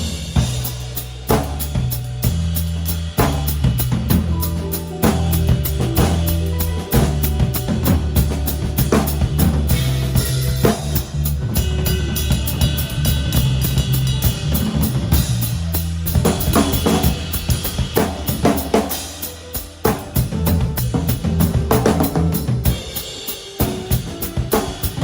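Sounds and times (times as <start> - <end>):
bass guitar notes: 0.0 - 23.0
drum kit: 0.0 - 25.0
guitar tones: 3.9 - 15.4.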